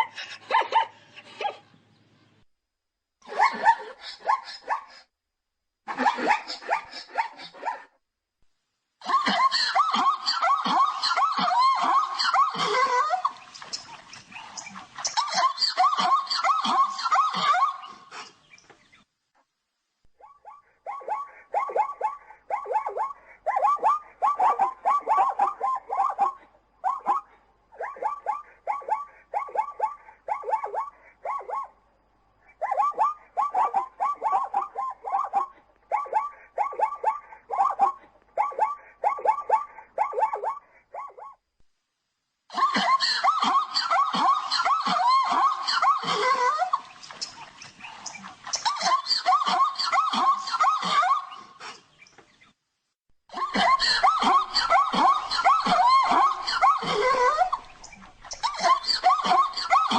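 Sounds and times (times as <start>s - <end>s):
zebra yelping barks: 20.2s - 31.8s, 32.5s - 41.4s
zebra yipping barks: 32.6s - 41.4s.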